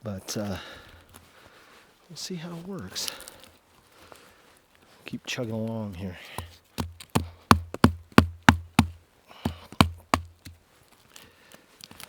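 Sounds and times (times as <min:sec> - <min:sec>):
knife batoning wood knocks: 0:06.8 - 0:08.9, 0:09.5 - 0:10.6.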